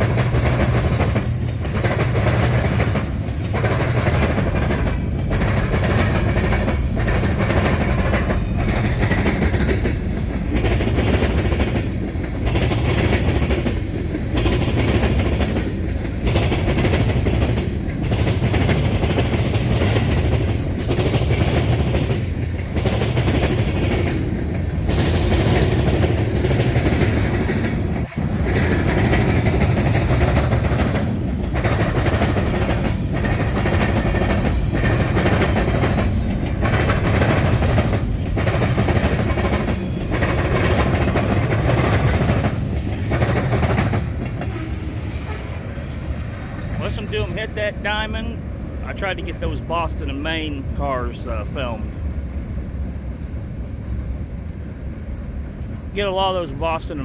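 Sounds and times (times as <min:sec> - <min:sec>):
train wheels clattering over crossing: 0:00.0 - 0:52.0.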